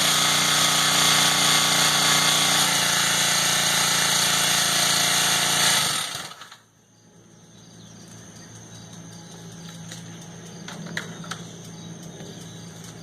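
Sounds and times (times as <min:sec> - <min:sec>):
pressure washer engine running: 0:00.0 - 0:06.6.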